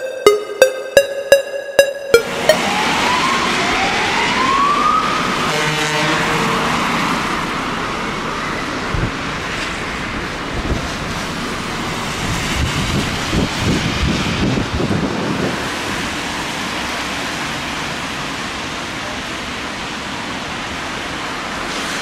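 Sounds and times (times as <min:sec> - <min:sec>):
fire engine siren: 0:00.0 - 0:09.3
road and wind noise: 0:02.3 - 0:22.0
air horn blast: 0:05.4 - 0:06.8.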